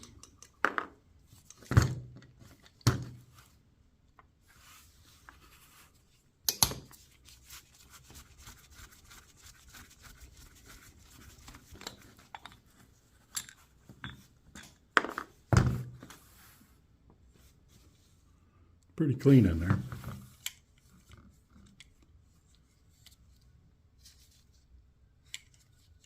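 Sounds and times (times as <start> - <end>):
metal parts knocking and clinking: 11.8 - 15.2.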